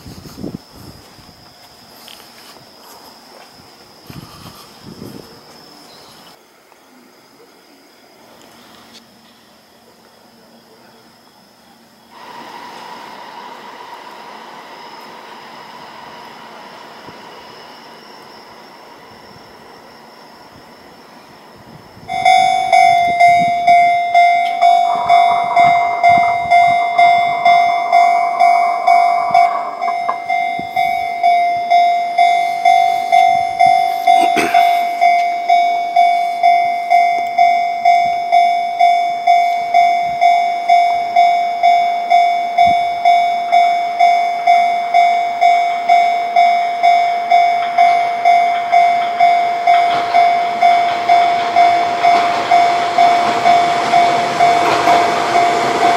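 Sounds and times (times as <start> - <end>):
level crossing bell clanging: 22.1 - 55.9.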